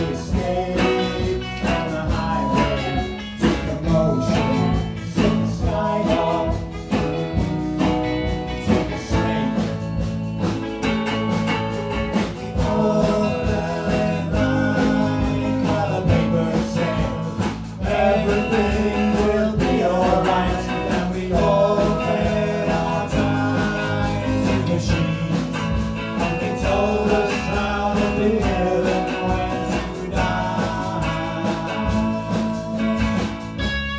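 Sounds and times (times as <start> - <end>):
person singing: 0.0 - 10.1, 12.2 - 33.7
rock band playing live: 0.0 - 33.9.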